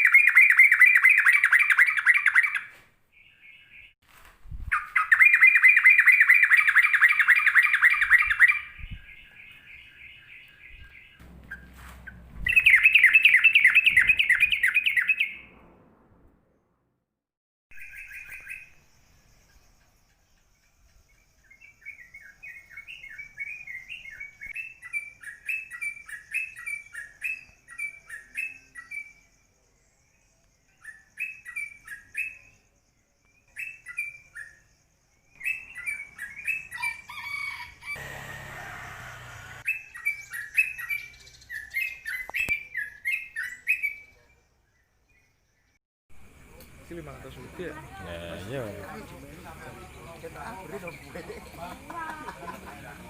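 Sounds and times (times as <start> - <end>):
songbird chirping: 0.0 - 15.6, 17.7 - 53.0
hissing rustling noise: 11.2 - 12.7.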